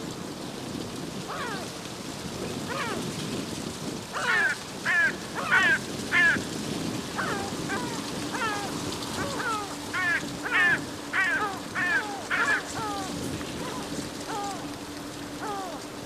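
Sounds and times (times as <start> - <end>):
steady rushing background noise: 0.0 - 16.0
gulls calling: 1.2 - 1.8, 2.5 - 3.1, 4.0 - 16.0.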